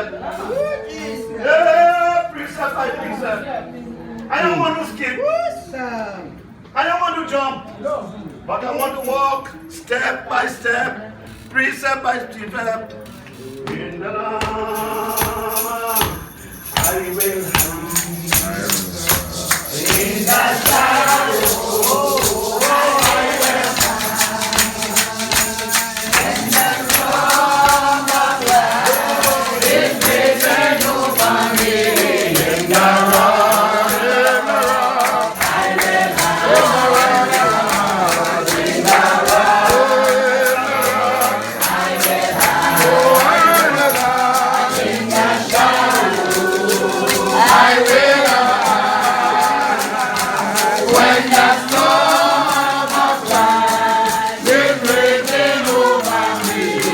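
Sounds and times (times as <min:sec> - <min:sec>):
rattling hand percussion: 0:08.8 - 0:09.7, 0:14.4 - 0:56.9
congregation singing a hymn: 0:13.7 - 0:56.9.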